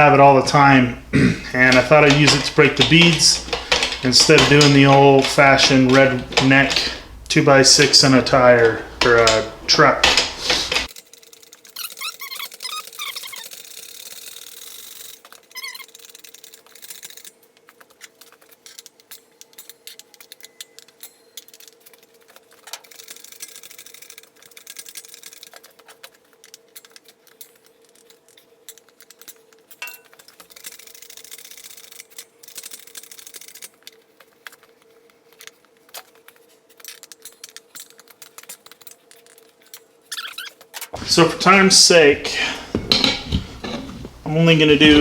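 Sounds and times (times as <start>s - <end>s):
metal clicks and knocks: 0.5s - 10.9s, 41.0s - 45.0s.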